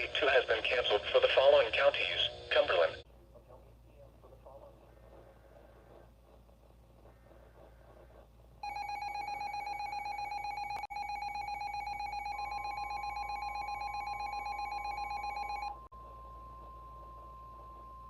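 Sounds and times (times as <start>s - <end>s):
two-tone alarm: 8.6s - 18.0s.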